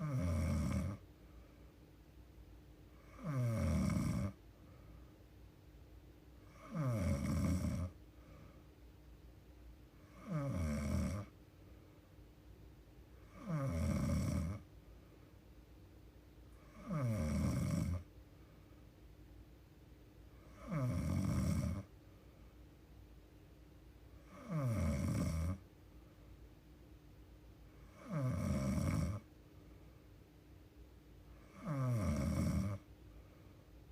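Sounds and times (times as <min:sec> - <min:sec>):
woman snoring: 0:00.0 - 0:01.0, 0:03.0 - 0:04.4, 0:06.5 - 0:08.0, 0:10.0 - 0:11.3, 0:13.2 - 0:14.6, 0:16.6 - 0:18.1, 0:20.5 - 0:21.9, 0:24.2 - 0:25.6, 0:27.8 - 0:29.3, 0:31.4 - 0:32.8.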